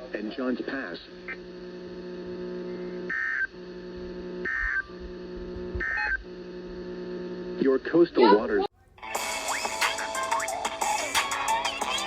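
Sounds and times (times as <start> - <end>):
steady electrical hum: 0.0 - 11.8
warbling data-tone bursts: 9.0 - 12.0.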